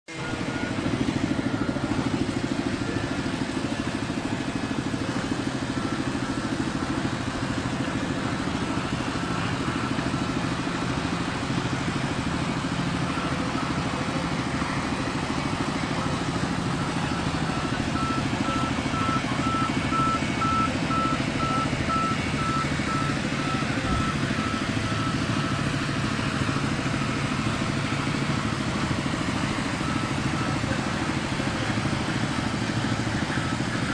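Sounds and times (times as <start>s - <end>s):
machine motor humming: 0.2s - 33.9s.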